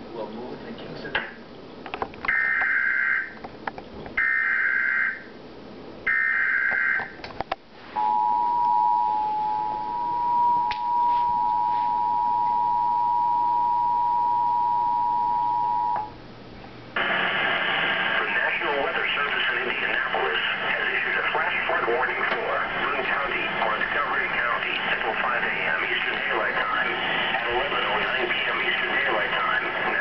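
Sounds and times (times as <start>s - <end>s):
two-tone attention signal: 8.0s - 16.1s.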